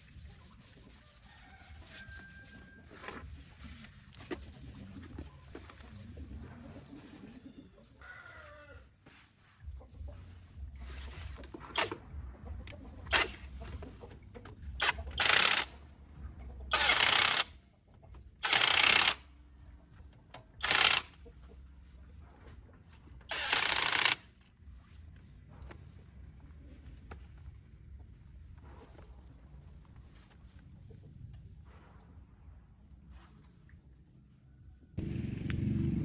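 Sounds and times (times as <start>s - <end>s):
rooster crowing faintly: 0.9s - 3.3s, 8.0s - 9.3s.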